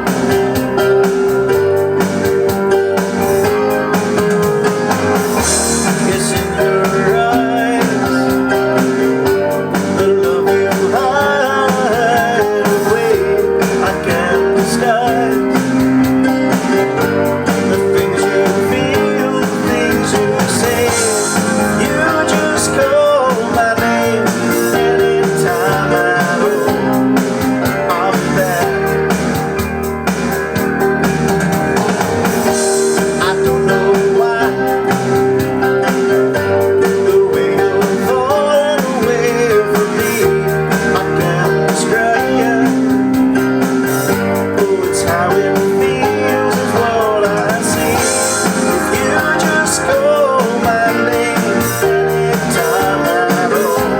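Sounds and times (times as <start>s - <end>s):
keyboard playing: 0.0s - 53.9s
pop-rock backing track: 0.0s - 53.9s.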